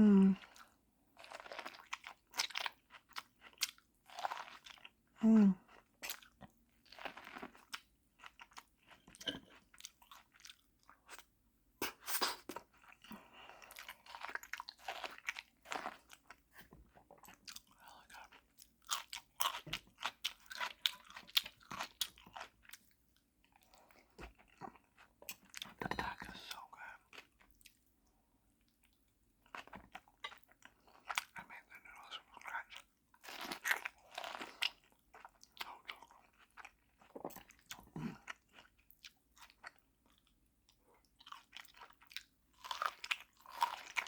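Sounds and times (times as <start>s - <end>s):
crunchy wet chewing: 0.4s - 5.0s, 41.1s - 44.0s.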